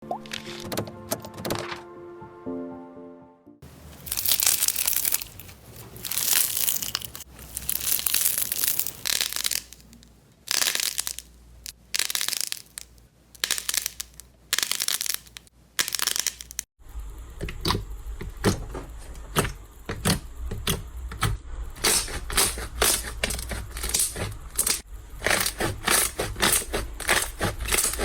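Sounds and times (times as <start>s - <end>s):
slime squished by hand: 4.0s - 16.6s.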